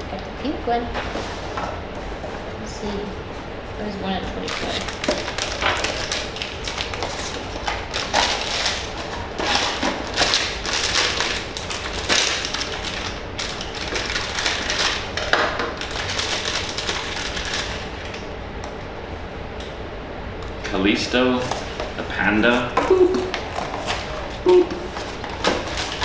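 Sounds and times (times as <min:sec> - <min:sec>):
cardboard packaging rustling: 0:04.3 - 0:18.2, 0:23.1 - 0:26.0.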